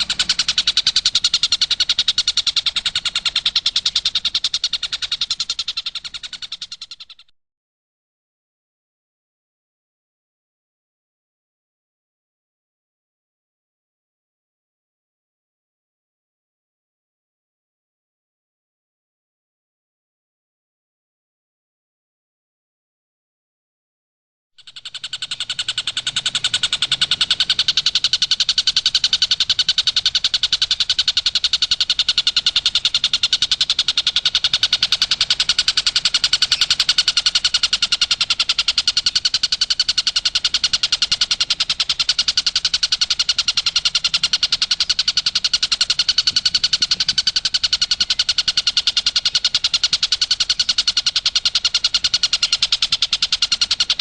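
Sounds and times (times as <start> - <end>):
kingfisher rattling trill: 0.0 - 7.3, 24.6 - 54.0.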